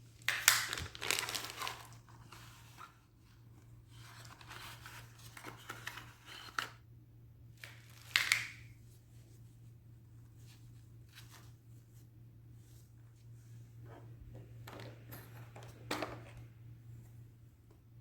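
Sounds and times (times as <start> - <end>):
rustling and crinkling handling: 0.0 - 6.8, 7.6 - 17.9
steady low hum: 8.7 - 18.0.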